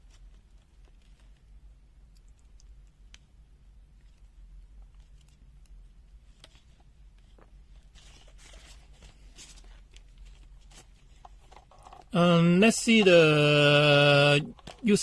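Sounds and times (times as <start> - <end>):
low mains hum: 0.0 - 15.0
soft rustles: 4.0 - 12.1.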